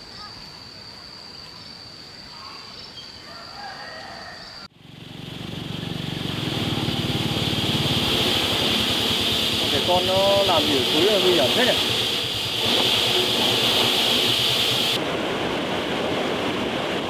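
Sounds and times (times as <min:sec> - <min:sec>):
faint bird chirps: 0:01.3 - 0:04.7
high insect buzz: 0:05.3 - 0:15.0
rushing floodwater: 0:05.3 - 0:17.0.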